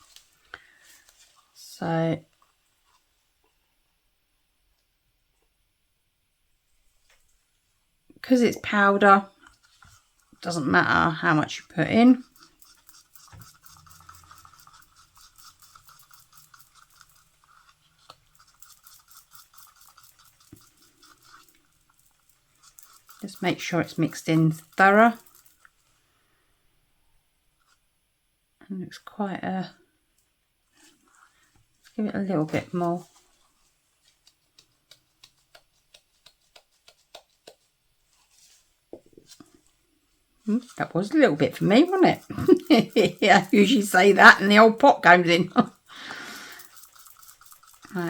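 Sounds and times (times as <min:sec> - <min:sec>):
stirring stick scraping a cup: 0:08.8 - 0:25.8, 0:30.8 - 0:39.8, 0:40.4 - 0:48.0
light clicks mixing pigment: 0:11.6 - 0:25.8, 0:34.0 - 0:37.8.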